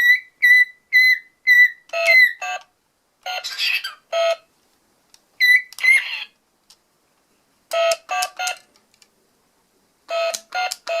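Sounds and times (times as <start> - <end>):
cockatiel whistled call: 0.0 - 2.6, 5.4 - 6.3.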